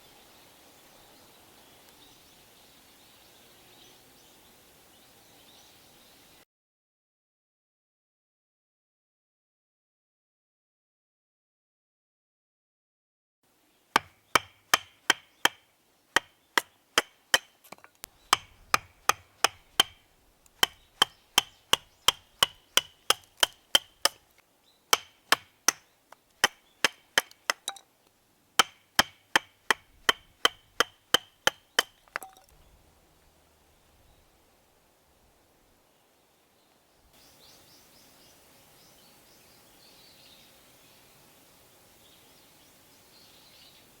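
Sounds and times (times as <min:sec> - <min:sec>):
blade chopping wood: 0:14.0 - 0:15.6, 0:16.2 - 0:27.8, 0:28.6 - 0:32.6.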